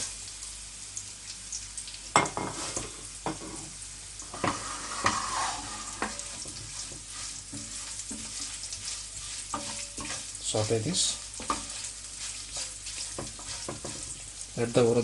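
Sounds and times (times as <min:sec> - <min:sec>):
spices sizzling in hot oil: 0:00.0 - 0:15.0
utensil knocking against pan: 0:13.2 - 0:14.1.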